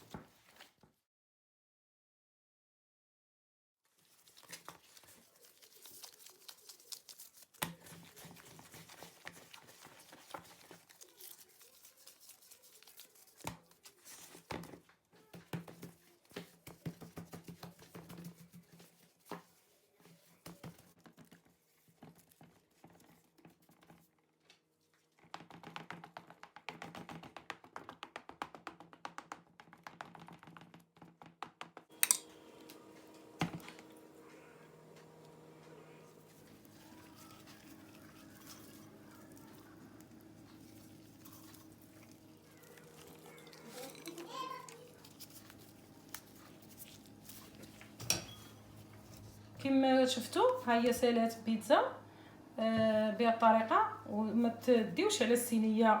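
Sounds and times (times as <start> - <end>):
faint steady hum: 44.7 - 56.0.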